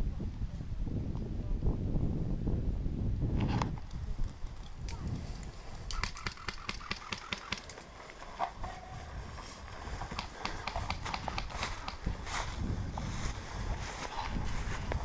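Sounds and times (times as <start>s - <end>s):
wind rumble on microphone: 0.0s - 7.1s, 7.9s - 15.0s
footsteps crunching on gravel: 7.7s - 15.0s.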